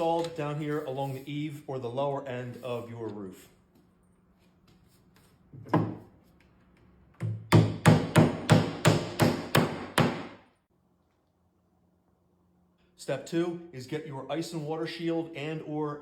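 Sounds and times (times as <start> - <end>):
hammer driving nails: 7.2 - 10.4.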